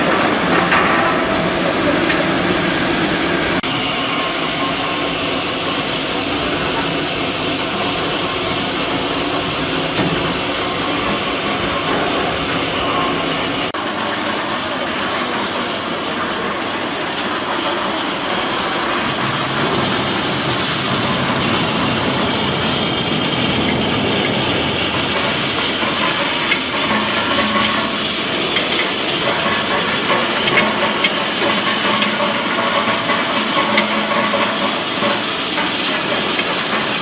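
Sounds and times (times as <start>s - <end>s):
olive oil machine running: 0.0s - 37.0s
scattered knocks: 19.0s - 37.0s.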